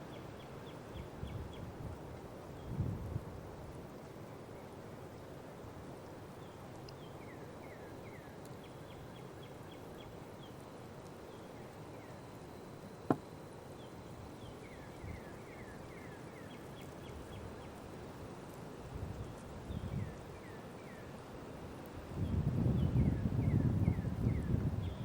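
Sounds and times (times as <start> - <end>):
outdoor background noise: 0.0 - 25.0
small songbird singing: 13.1 - 17.9, 22.2 - 25.0.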